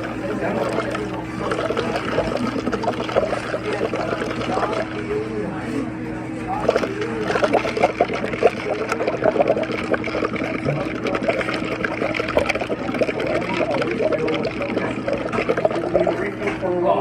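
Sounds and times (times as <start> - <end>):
water bubbling: 0.0 - 5.0, 6.5 - 16.5
steady low hum: 0.0 - 17.0.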